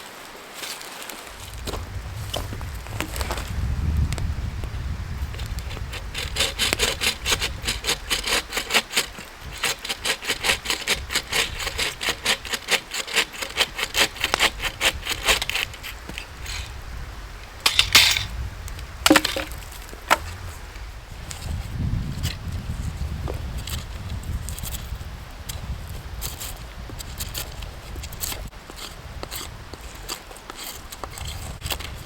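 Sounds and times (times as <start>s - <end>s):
hand saw cutting wood: 5.3s - 16.7s, 17.6s - 18.3s, 19.1s - 20.3s, 28.2s - 32.0s
wood snapping: 19.1s - 20.3s.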